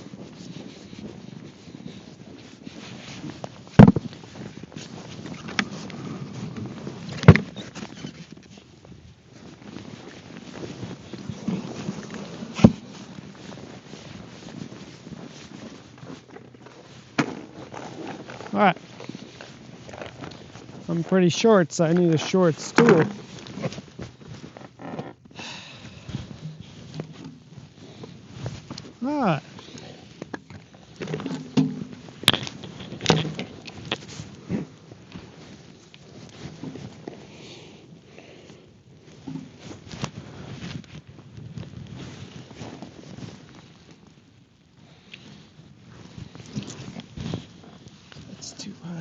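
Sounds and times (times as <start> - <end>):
wind rumble on microphone: 0.0 - 16.3, 25.2 - 37.3, 38.8 - 48.3
rustling gear: 0.0 - 49.0
gear knocking when set down: 22.0 - 23.8.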